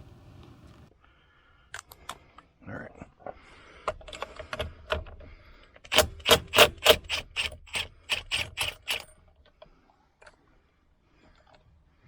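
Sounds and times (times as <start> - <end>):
socket ratchet rasping: 3.9 - 9.3.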